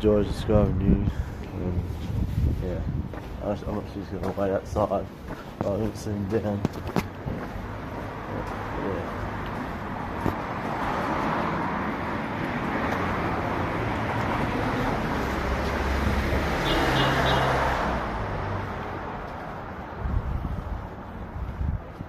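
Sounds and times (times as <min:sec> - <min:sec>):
street traffic noise: 0:00.0 - 0:22.0
vehicle passing close by: 0:08.0 - 0:20.8.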